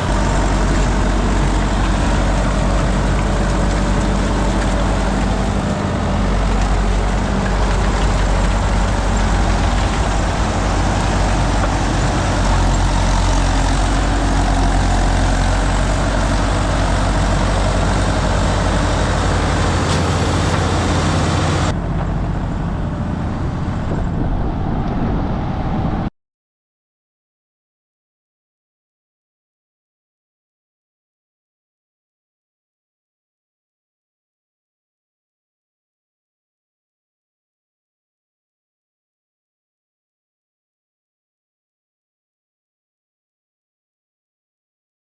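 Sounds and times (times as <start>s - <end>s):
sawmill machinery running: 0.0s - 23.9s.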